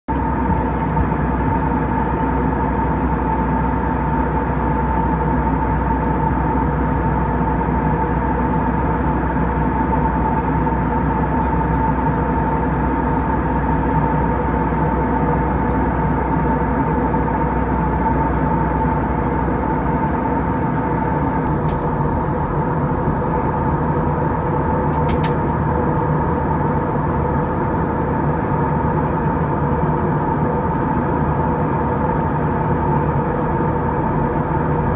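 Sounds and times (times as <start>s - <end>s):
airliner cabin noise: 0.1s - 34.9s
steady whine: 0.1s - 34.9s
brief click: 24.9s - 25.4s.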